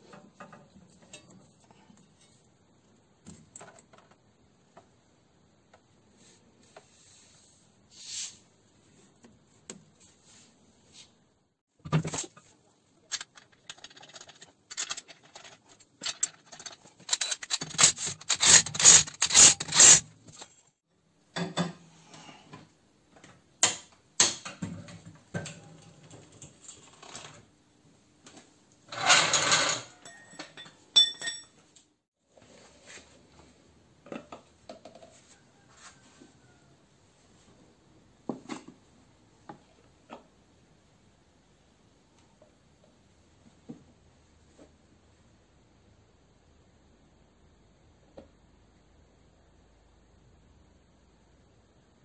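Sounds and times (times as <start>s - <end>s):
metal tools clinking and scraping: 13.1s - 20.0s, 28.9s - 31.6s.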